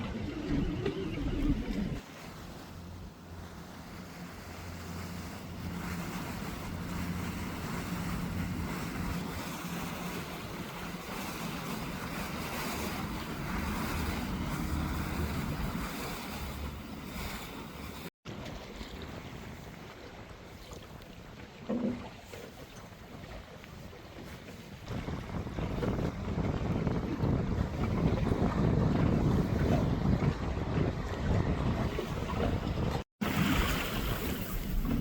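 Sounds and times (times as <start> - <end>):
wind noise on microphone: 0.0 - 2.0, 4.8 - 18.1, 24.2 - 35.0
water wash: 0.0 - 23.0, 24.8 - 35.0
boat engine humming: 0.0 - 35.0.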